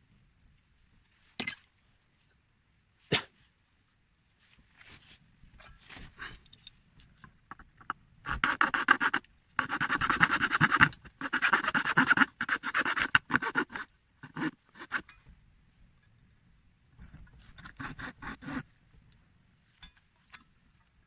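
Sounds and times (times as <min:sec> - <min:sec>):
hand tool scraping carving: 0:08.2 - 0:15.2, 0:17.5 - 0:18.7.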